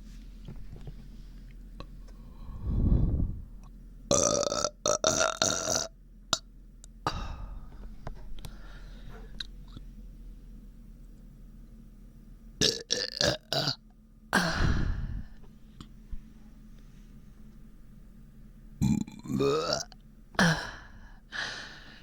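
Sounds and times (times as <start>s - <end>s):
person burping: 4.1s - 5.9s, 12.6s - 13.8s, 14.4s - 15.0s, 18.8s - 20.9s.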